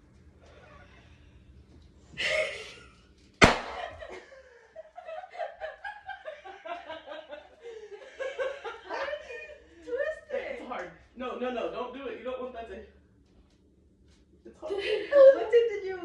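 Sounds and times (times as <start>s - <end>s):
sharp smack: 3.4s - 4.0s.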